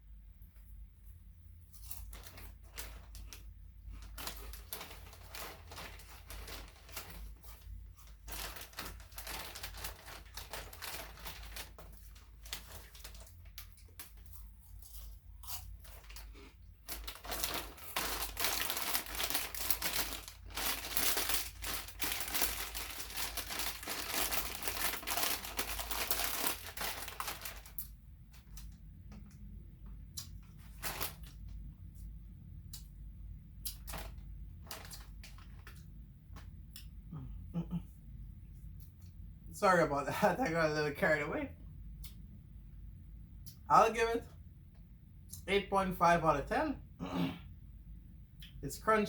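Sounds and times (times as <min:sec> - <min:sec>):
crunching chips: 0:01.7 - 0:28.7, 0:30.2 - 0:31.5, 0:33.6 - 0:35.9
chip bag crinkling: 0:01.8 - 0:28.8, 0:30.2 - 0:31.6, 0:33.7 - 0:35.9.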